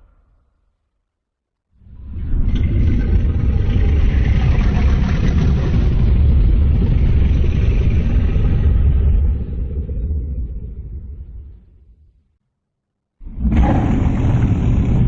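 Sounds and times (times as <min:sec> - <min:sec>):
deep monster rumbling: 0:01.8 - 0:12.1, 0:13.2 - 0:15.0.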